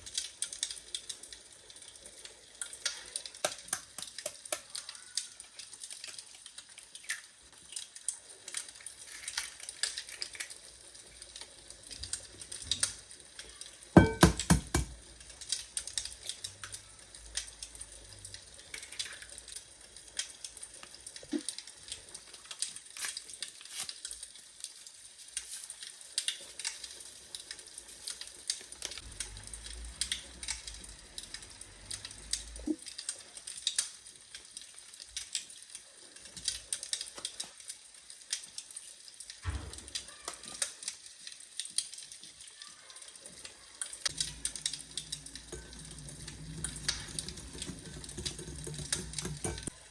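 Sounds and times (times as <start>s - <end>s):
utensils knocking against pan: 14.0s - 15.0s, 44.1s - 49.8s
food sizzling in a pan: 17.2s - 29.0s.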